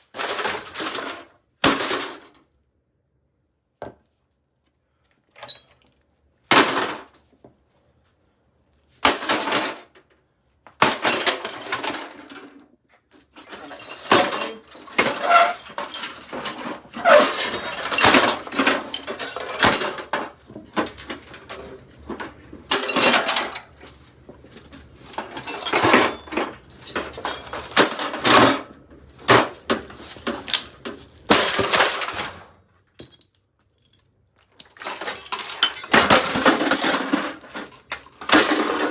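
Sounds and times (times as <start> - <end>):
microwave oven being smashed: 6.5 - 7.1, 9.0 - 9.8, 10.8 - 12.4, 13.5 - 23.8, 25.0 - 32.6, 34.7 - 38.9
clattering debris: 10.8 - 12.4, 13.4 - 38.9.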